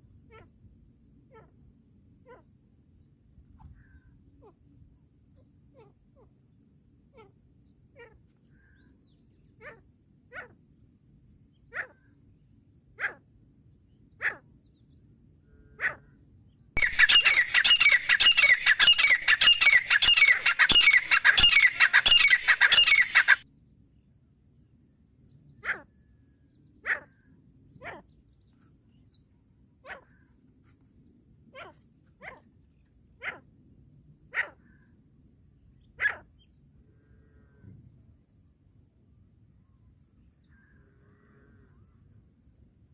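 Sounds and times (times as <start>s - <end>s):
francolin calling: 16.8s - 23.4s.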